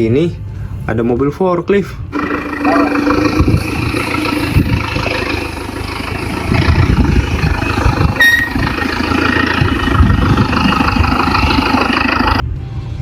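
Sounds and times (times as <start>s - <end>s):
vehicle engine rumbling: 0.0s - 13.0s
short high beep: 8.2s - 8.6s.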